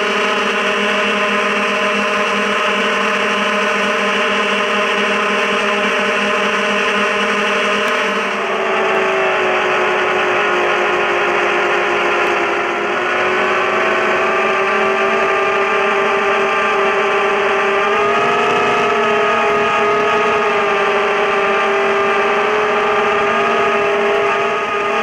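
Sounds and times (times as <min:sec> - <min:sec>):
quadcopter propellers whining: 0:00.0 - 0:25.0.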